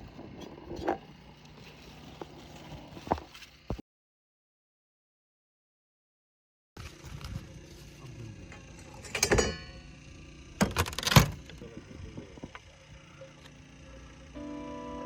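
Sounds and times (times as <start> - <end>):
metallic clink: 8.8 - 9.9.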